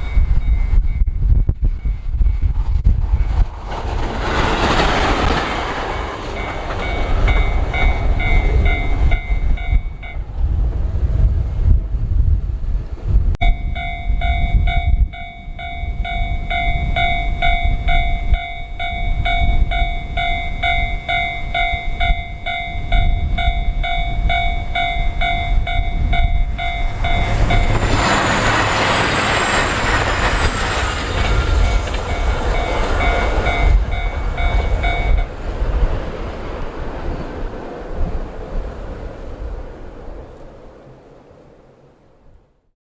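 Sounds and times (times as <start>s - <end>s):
level-crossing warning bell: 0.0s - 2.5s, 4.4s - 10.4s, 13.4s - 35.4s
diesel train passing: 0.0s - 42.4s
wind buffeting microphone: 0.0s - 42.6s.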